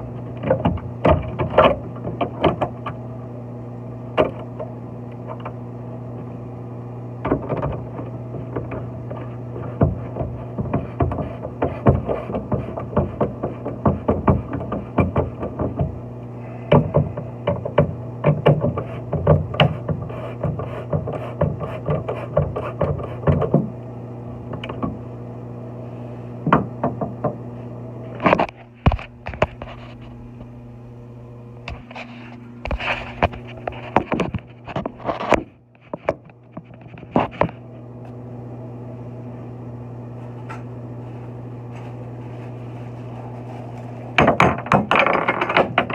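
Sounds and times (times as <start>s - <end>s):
steady low hum: 0.0s - 45.9s
sharp clicks and knocks: 0.3s - 3.0s, 7.2s - 16.0s, 16.7s - 23.7s, 24.5s - 25.0s, 26.4s - 27.4s, 28.1s - 31.0s, 31.6s - 38.2s, 44.2s - 45.9s.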